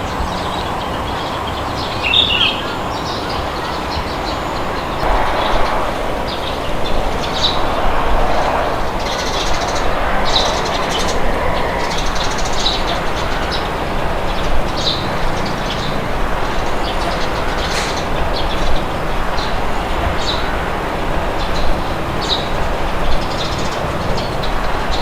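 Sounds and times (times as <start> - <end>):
birds chirping: 0.0 - 16.0
steady wind: 0.0 - 25.0.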